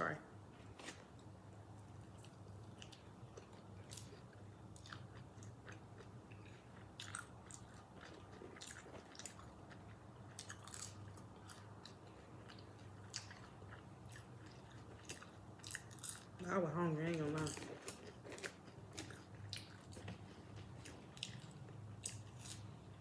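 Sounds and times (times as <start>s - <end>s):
low steady hum: 0.0s - 23.0s
crunching and chewing mouth sounds: 0.6s - 16.4s, 17.1s - 23.0s.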